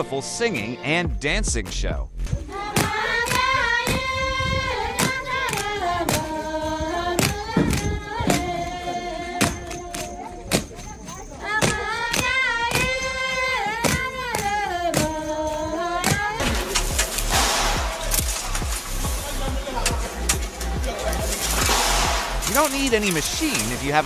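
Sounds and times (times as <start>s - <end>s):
rhythmic thuds: 0.4s - 24.0s
women singing together: 2.4s - 18.6s.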